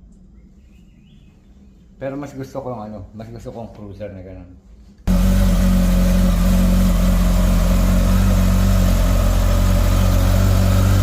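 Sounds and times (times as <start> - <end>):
motorcycle engine idling: 5.1 - 11.0.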